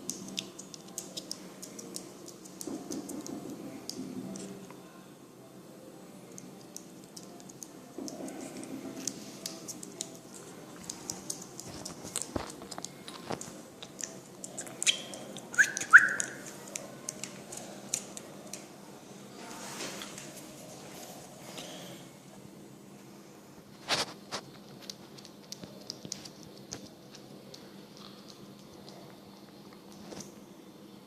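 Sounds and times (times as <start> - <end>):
bird eating clicks and taps: 0.0 - 4.5
bird whistled chirps: 14.8 - 16.4.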